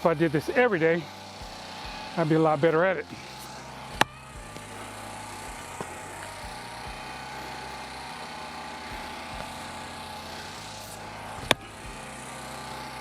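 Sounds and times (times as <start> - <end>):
steady low drone: 0.0 - 13.0
axe striking firewood: 3.9 - 4.7.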